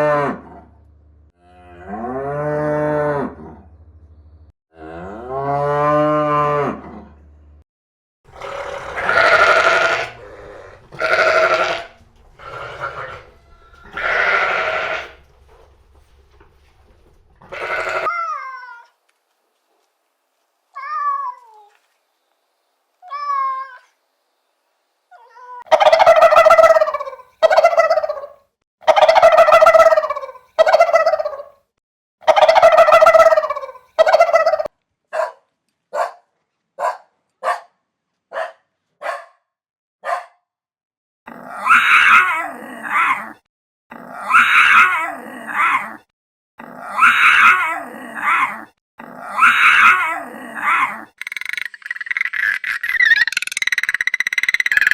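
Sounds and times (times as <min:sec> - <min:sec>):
cat meowing: 0:11.0 - 0:15.2, 0:17.5 - 0:18.9.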